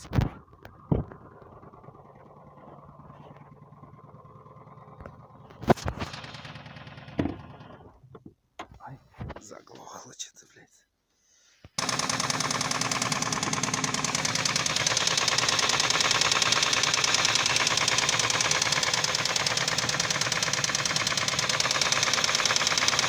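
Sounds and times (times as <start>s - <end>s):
car engine idling: 0.5s - 8.2s, 11.8s - 23.0s
rapid engine knock: 0.8s - 8.0s, 11.8s - 23.0s.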